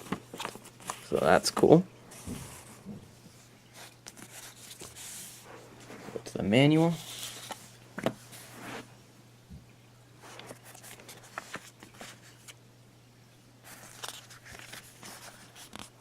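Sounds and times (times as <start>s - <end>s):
paper rustling: 0.0s - 2.8s, 3.7s - 8.9s, 10.2s - 12.6s, 13.6s - 16.0s.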